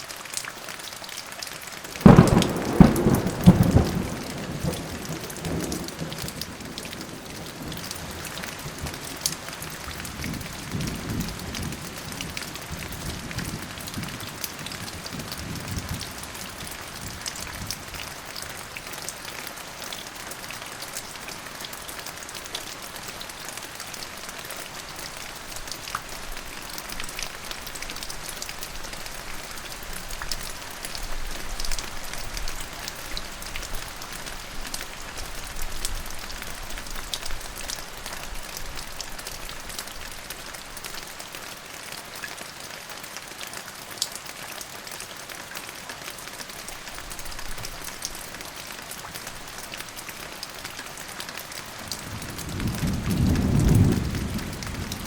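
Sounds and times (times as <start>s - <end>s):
rain falling: 0.0s - 55.0s
low rumble of thunder: 2.0s - 9.2s, 9.9s - 17.9s, 51.9s - 55.0s
raindrops clicking: 2.0s - 16.1s, 51.9s - 55.0s.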